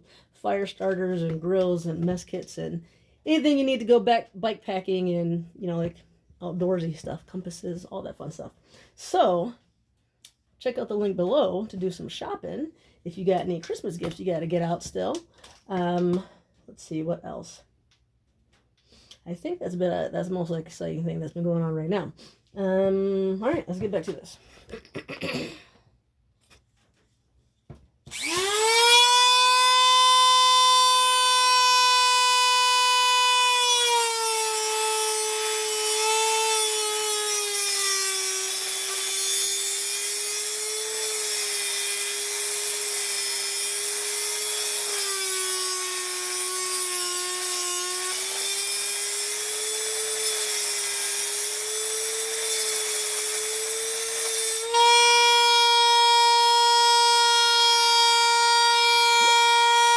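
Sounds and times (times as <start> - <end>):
electric power tool whining: 28.1 - 59.9.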